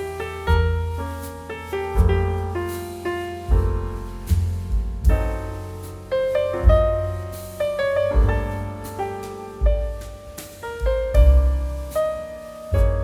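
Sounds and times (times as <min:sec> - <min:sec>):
slow piano chords: 0:00.0 - 0:13.0.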